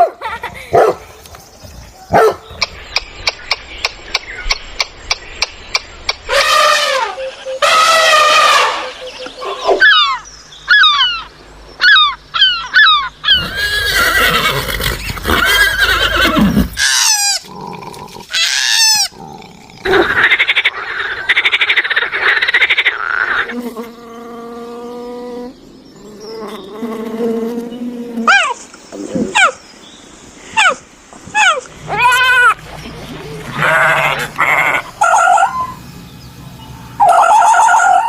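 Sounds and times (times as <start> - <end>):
steady pitched animal call: 30.6 - 38.0
fast pulsing rattling call: 31.4 - 38.0.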